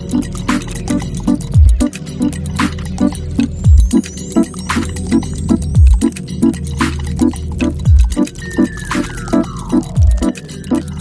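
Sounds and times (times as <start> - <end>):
light percussion hits: 0.4 - 8.2
deep bass kick: 1.6 - 1.9, 3.6 - 4.0, 5.8 - 6.1, 7.9 - 8.2, 10.0 - 10.3
sharp clap: 2.6 - 3.0.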